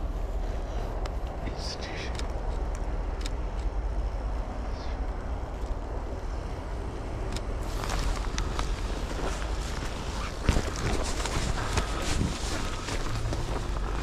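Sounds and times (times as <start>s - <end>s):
low outdoor rumble: 0.0s - 14.0s
footsteps crunching through snow: 7.6s - 14.0s.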